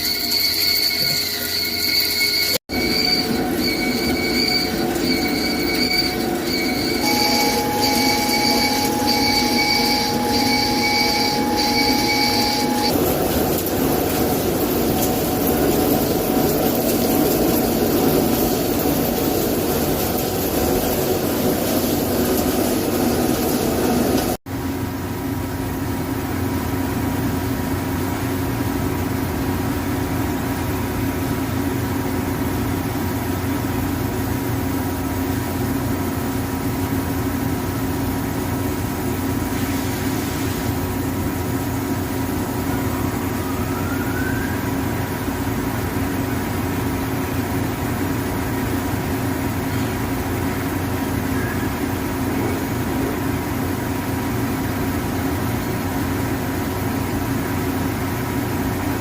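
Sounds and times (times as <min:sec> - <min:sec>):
lathe machine hum: 0:00.0 - 0:24.4.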